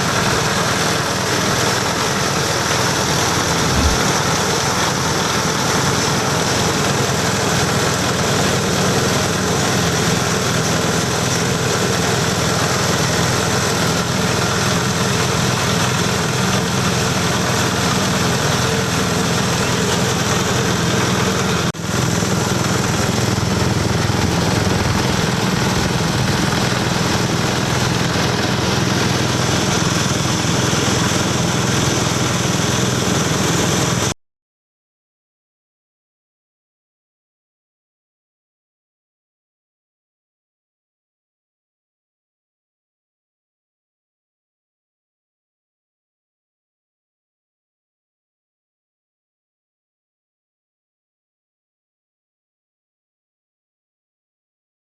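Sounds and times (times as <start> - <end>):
grinding machine loud drone: 0.0 - 7.9, 16.2 - 34.0.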